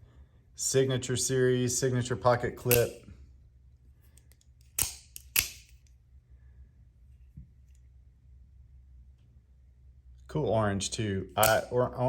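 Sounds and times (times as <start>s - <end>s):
knife blade metallic snaps: 2.6s - 3.0s, 4.2s - 5.8s, 11.4s - 11.7s.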